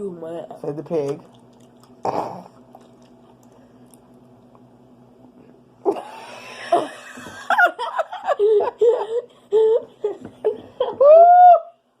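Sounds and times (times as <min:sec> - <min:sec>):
person laughing: 0:05.8 - 0:11.6.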